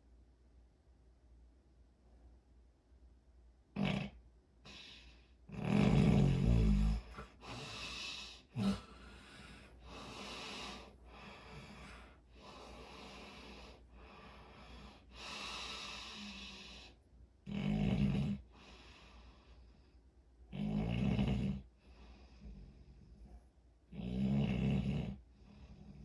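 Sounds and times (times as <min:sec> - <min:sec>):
snorts: 0:03.8 - 0:19.2, 0:20.5 - 0:23.3, 0:23.9 - 0:26.0
soft airy breaths: 0:04.6 - 0:17.2, 0:18.4 - 0:20.4, 0:21.6 - 0:23.9, 0:25.2 - 0:26.0
person snoring: 0:05.5 - 0:12.0.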